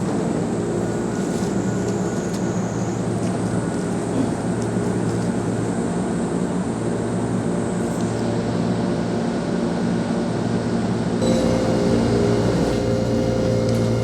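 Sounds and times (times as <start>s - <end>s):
electric train drone: 11.2s - 14.0s
steady tones: 11.2s - 14.0s.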